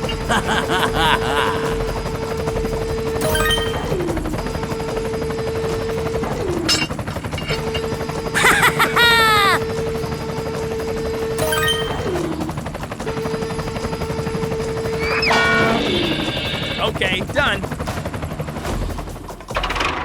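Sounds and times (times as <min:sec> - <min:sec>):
loud clattering with whistle: 0:00.0 - 0:20.0.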